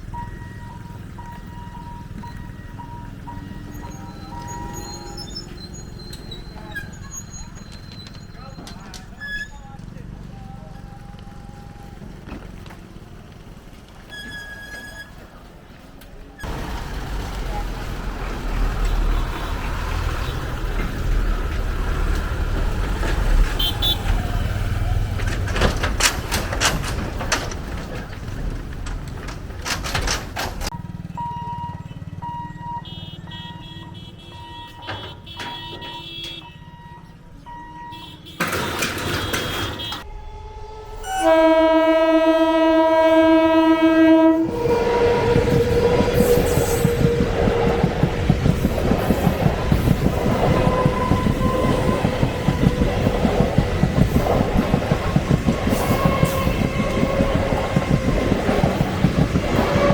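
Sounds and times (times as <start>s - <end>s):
vehicles passing with rumble: 0.0s - 59.9s
train wheels clattering: 16.4s - 30.8s, 38.4s - 40.1s, 44.4s - 59.9s
train horn blast: 23.5s - 24.6s, 39.2s - 48.5s, 49.1s - 53.1s, 55.4s - 59.9s.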